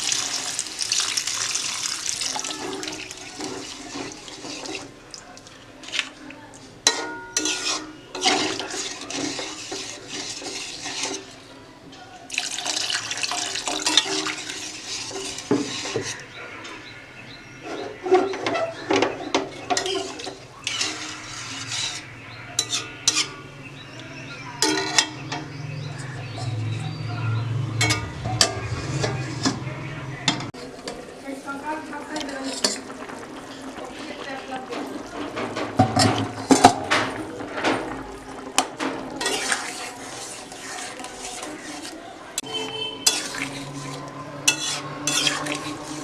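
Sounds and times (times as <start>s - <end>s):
pots and utensils clattering: 0.0s - 6.2s, 6.8s - 11.5s, 12.3s - 16.9s, 17.6s - 46.0s
water splashing and pouring: 0.0s - 6.2s, 12.3s - 16.0s, 31.9s - 46.0s.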